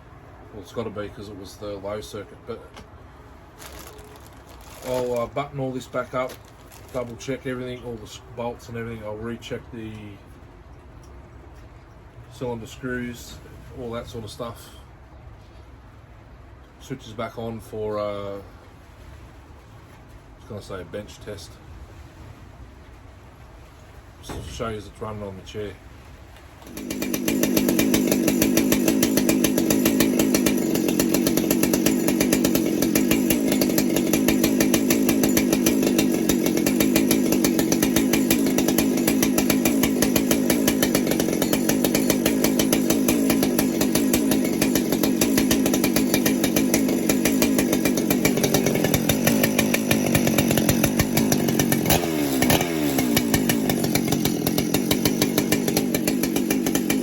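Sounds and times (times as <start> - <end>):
chainsaw running: 3.6 - 8.1, 26.6 - 57.0.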